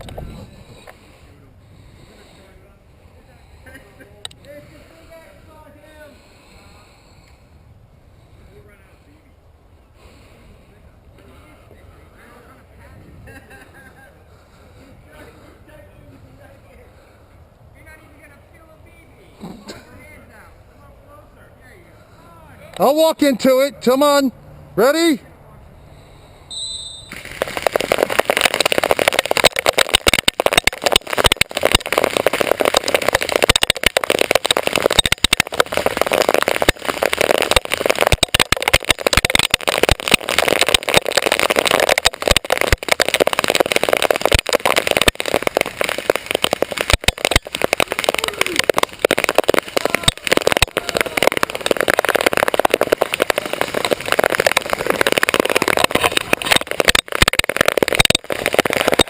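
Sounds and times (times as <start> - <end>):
airsoft guns rattling: 27.1 - 59.0.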